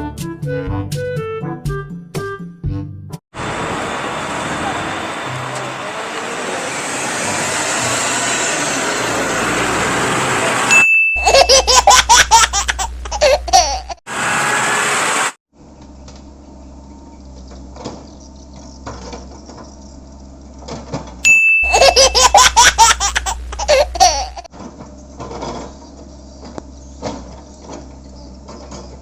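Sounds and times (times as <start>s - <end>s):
short high ding: 10.7s - 11.3s, 21.2s - 21.9s
laughter sound effect: 11.2s - 14.0s, 21.6s - 24.5s.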